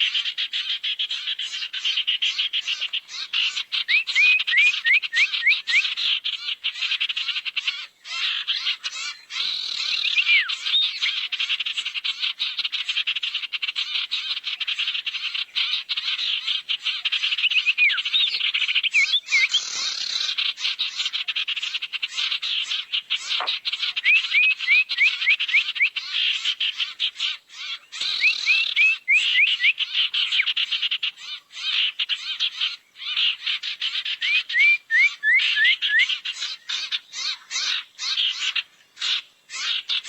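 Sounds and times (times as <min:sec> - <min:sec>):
whistled bird notes: 0:03.9 - 0:06.0, 0:09.6 - 0:11.2, 0:17.3 - 0:20.2, 0:23.2 - 0:26.1, 0:27.9 - 0:30.5, 0:34.2 - 0:36.2
chattering bird trill: 0:16.8 - 0:20.3, 0:21.6 - 0:26.2, 0:27.6 - 0:30.6.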